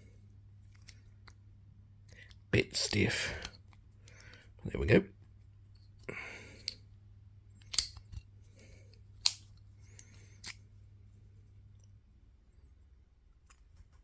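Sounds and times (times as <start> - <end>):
low steady hum: 0.0 - 14.0
lock picks scraping: 7.6 - 8.2, 9.2 - 10.6.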